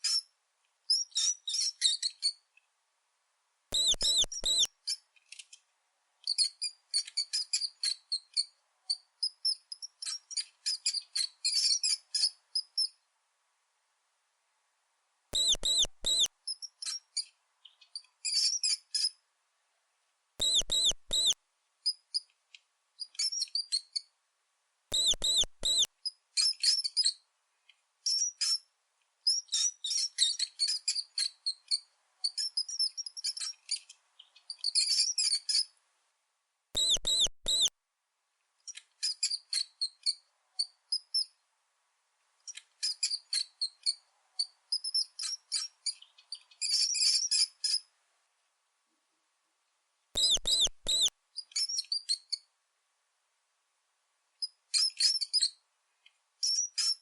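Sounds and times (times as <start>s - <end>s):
mice squeaking: 0.0s - 0.3s, 0.9s - 2.4s, 3.7s - 5.5s, 6.2s - 13.0s, 15.3s - 19.2s, 20.4s - 22.3s, 23.0s - 24.1s, 24.9s - 27.2s, 28.0s - 28.6s, 29.3s - 35.7s, 36.8s - 37.7s, 42.5s - 47.9s, 50.2s - 52.4s, 54.4s - 55.6s, 56.4s - 57.0s.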